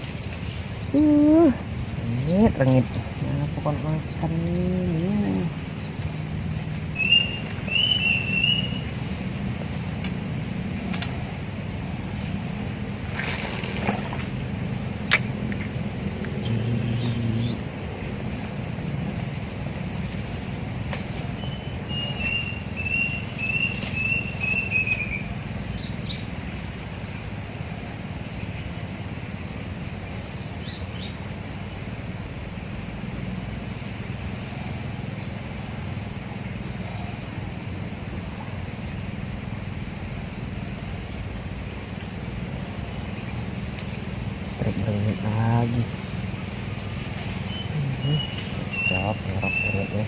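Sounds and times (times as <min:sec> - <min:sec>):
low outdoor rumble: 0:00.0 - 0:50.0
faint clicks: 0:10.9 - 0:11.2.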